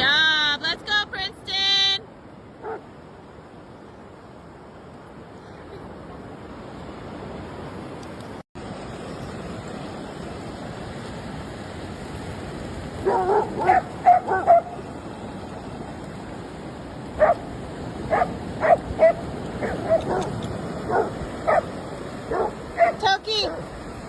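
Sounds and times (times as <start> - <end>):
surf: 0.0 - 24.0
wind: 0.0 - 24.0
dog yipping: 13.1 - 14.8, 20.9 - 21.6.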